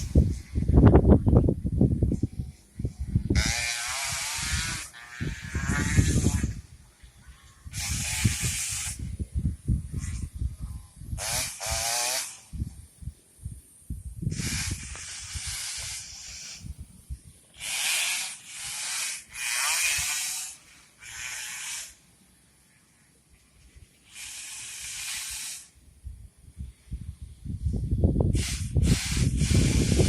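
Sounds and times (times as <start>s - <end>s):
wind buffeting microphone: 0.0s - 17.7s, 25.9s - 30.0s.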